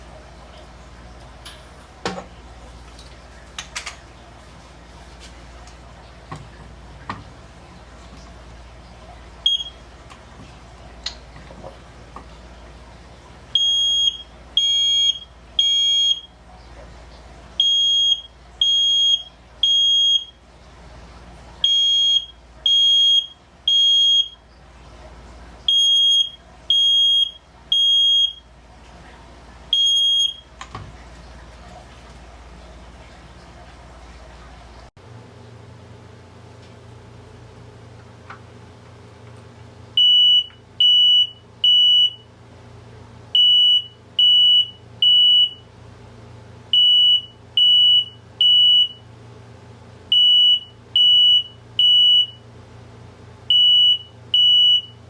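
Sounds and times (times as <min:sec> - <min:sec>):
smoke alarm beeping: 0:09.4 - 0:09.8, 0:13.6 - 0:16.4, 0:17.6 - 0:20.4, 0:21.6 - 0:24.4, 0:25.7 - 0:28.5, 0:29.7 - 0:30.5, 0:40.0 - 0:42.3, 0:43.4 - 0:45.7, 0:46.7 - 0:49.0, 0:50.1 - 0:52.4, 0:53.5 - 0:55.0.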